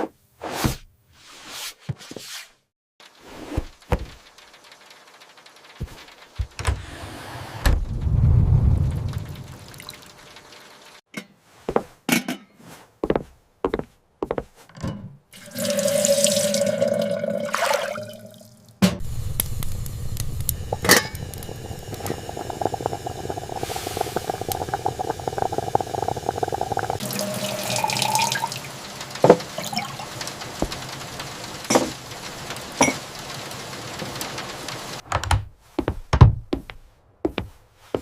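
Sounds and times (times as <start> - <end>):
water running from a tap: 3.8 - 6.4, 8.9 - 11.0, 15.4 - 18.5, 19.4 - 35.0.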